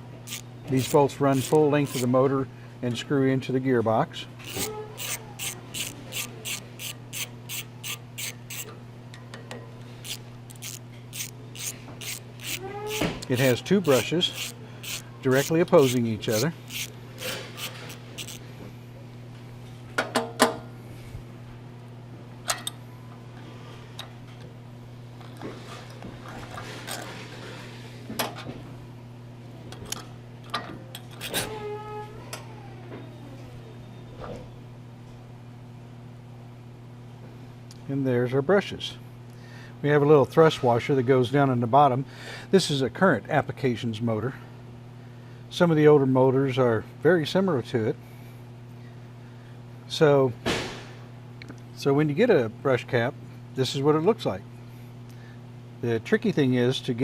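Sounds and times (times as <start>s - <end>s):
metal parts clinking: 0.3s - 2.1s, 4.4s - 8.7s, 10.0s - 18.4s
ratchet wrench clicking: 0.3s - 2.1s, 4.4s - 8.7s, 10.0s - 18.4s.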